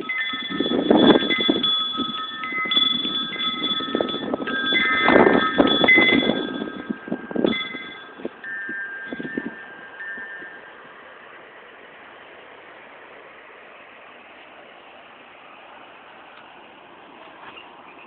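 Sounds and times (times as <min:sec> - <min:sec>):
wind rumble on microphone: 0:00.0 - 0:10.6
wind chimes ringing: 0:00.0 - 0:11.7.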